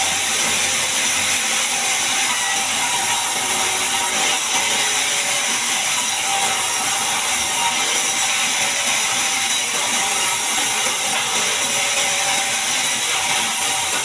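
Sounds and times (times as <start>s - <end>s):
band saw cutting log: 0.0s - 14.0s.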